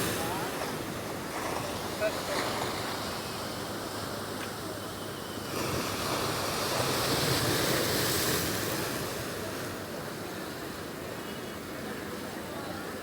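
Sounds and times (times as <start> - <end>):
sea surf breaking on shore: 0.0 - 4.4.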